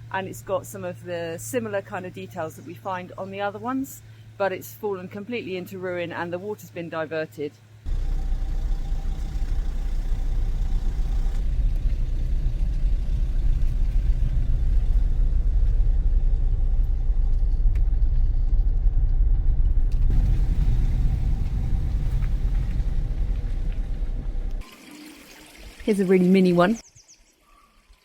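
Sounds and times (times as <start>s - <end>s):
loud low rumble: 7.9s - 24.6s.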